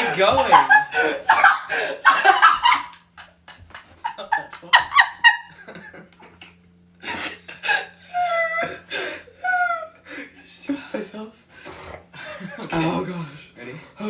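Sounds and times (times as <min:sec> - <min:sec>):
stifled giggling: 0:00.0 - 0:10.3
faint steady hum: 0:00.0 - 0:14.0.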